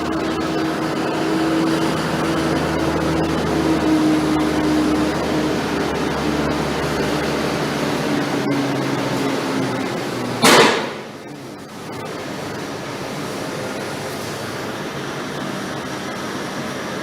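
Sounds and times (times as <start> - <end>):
loud short burst of noise: 0.0 - 11.2
vehicle engine running: 0.0 - 17.0.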